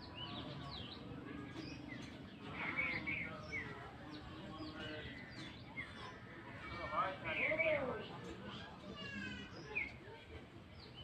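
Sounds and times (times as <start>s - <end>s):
birds chirping and trilling: 0.0s - 8.1s.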